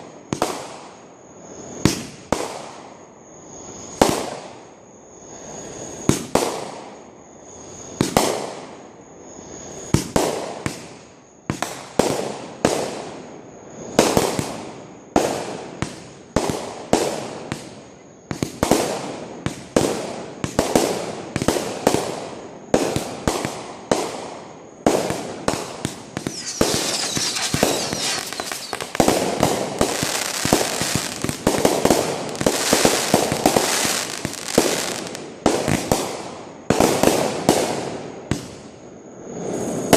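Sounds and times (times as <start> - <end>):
fireworks crackling barrage: 9.9 - 38.7, 39.3 - 39.9
fireworks banging: 24.9 - 38.6.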